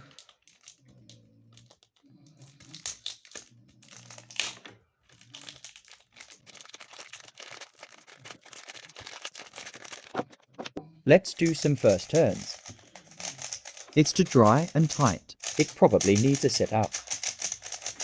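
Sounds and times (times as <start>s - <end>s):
plastic wrapping crinkling and tearing: 0.0s - 0.8s, 2.5s - 10.6s.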